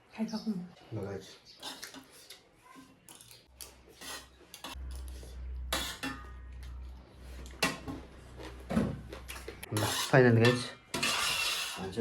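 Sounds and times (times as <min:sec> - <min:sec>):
dishes and utensils clinking: 0:03.1 - 0:06.8, 0:07.4 - 0:11.9.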